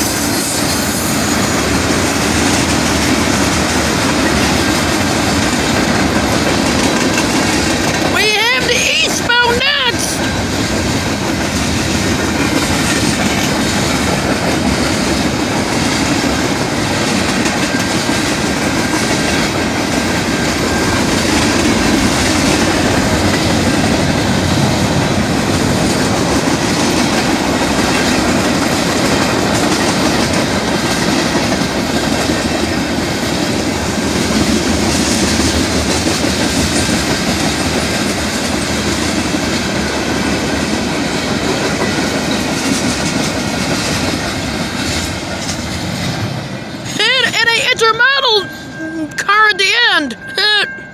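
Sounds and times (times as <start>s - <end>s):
train wheels rolling on rails: 0.0s - 46.9s.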